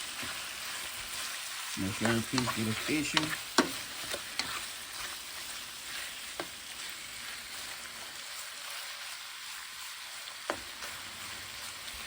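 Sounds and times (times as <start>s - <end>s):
meat sizzling in a pan: 0.0s - 12.0s
utensil knocking on pan: 2.0s - 3.8s.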